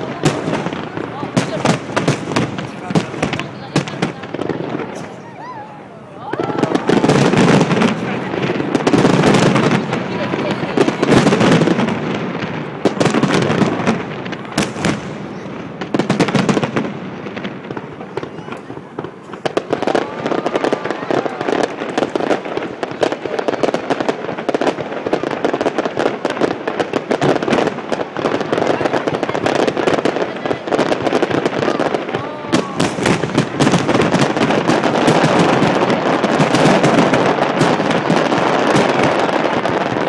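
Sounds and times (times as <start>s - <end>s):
fireworks bursting and crackling: 0.0s - 40.0s.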